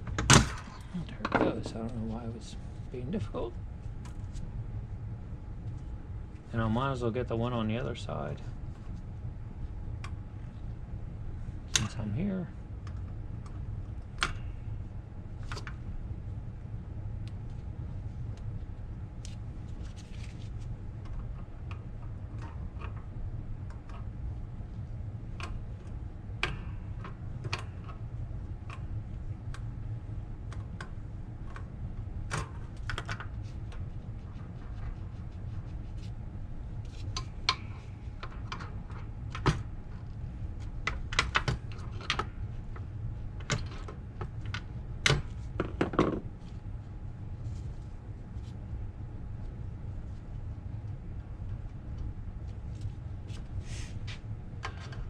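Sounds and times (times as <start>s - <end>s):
steady low hum: 0.0s - 55.0s.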